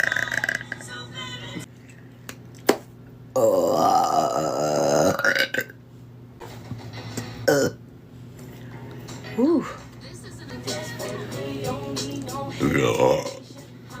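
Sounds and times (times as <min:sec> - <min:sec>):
person burping: 0:00.0 - 0:00.8, 0:03.3 - 0:05.8, 0:07.4 - 0:07.8, 0:12.6 - 0:13.4
brief vocal sound: 0:12.6 - 0:13.4.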